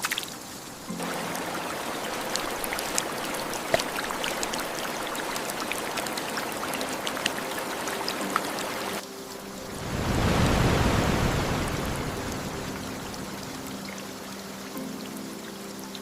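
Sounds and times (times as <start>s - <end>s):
sharp drip-like ticks: 0.0s - 9.4s
falling water rushing: 0.0s - 16.0s.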